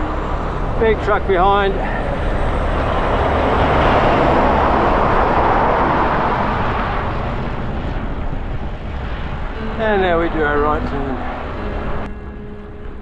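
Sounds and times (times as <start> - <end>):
truck passing close by: 0.0 - 8.1.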